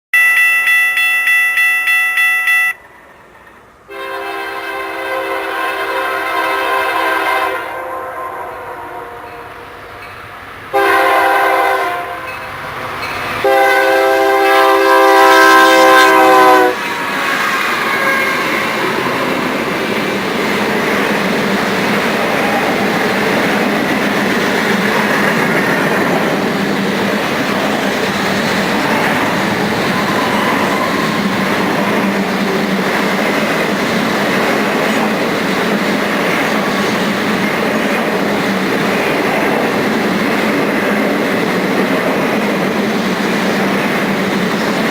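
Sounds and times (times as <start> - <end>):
freight train rumbling over rails: 2.8 - 44.9
locomotive air horn: 3.9 - 9.4, 10.7 - 12.4, 13.4 - 16.8.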